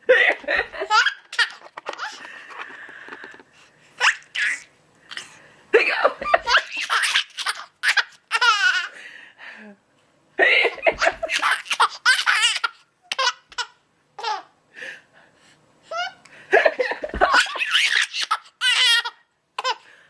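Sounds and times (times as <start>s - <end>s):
child giggling: 5.8s - 8.9s, 10.5s - 13.3s, 16.6s - 19.8s.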